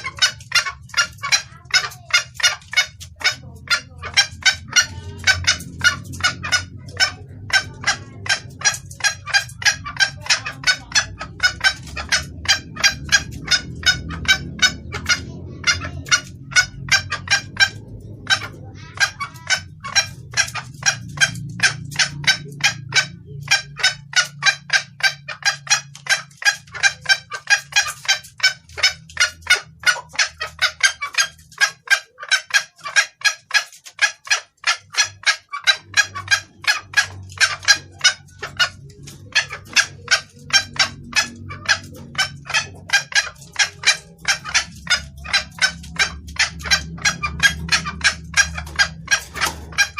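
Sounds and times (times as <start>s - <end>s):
hen clucking rapidly: 0.0s - 49.9s.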